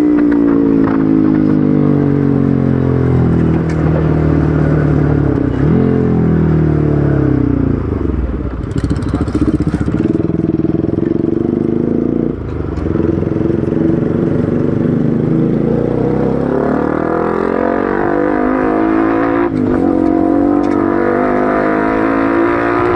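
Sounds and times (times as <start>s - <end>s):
motorcycle engine revving: 0.0s - 22.9s.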